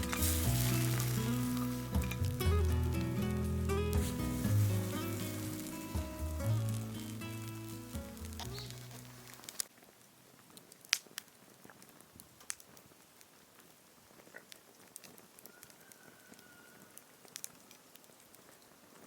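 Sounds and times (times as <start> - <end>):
quiet fire hiss: 0.0 - 15.5
log fire crackling: 0.0 - 19.0.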